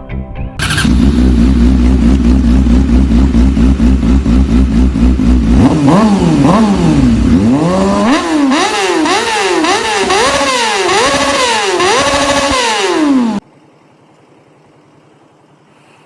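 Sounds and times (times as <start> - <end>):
motorcycle engine revving: 0.6 - 13.4.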